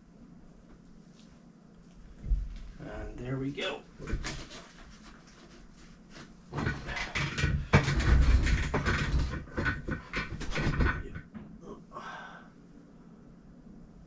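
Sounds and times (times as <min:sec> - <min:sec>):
knocks and clicks of bike parts: 0:06.5 - 0:11.5.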